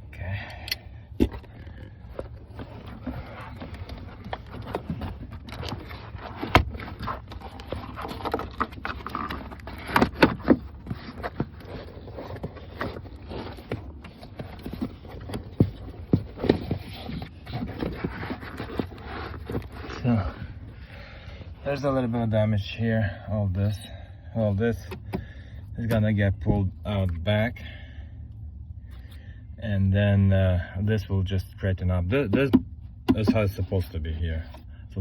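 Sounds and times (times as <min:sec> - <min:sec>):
steady low hum: 0:00.0 - 0:35.0
knocks clicks and scrapes on truck: 0:01.2 - 0:20.6, 0:32.3 - 0:33.8.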